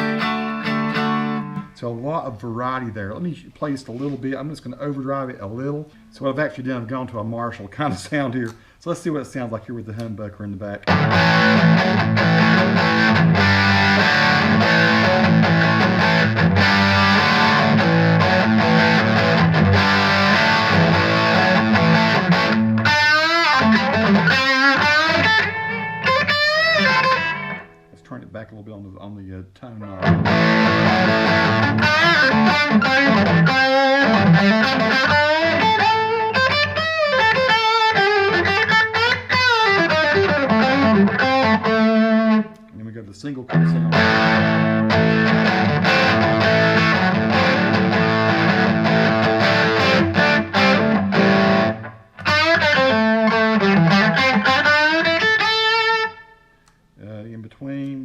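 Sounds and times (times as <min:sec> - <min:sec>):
distorted electric guitar chords: 0:00.0 - 0:01.8, 0:10.8 - 0:28.0, 0:29.8 - 0:42.6, 0:43.5 - 0:56.4.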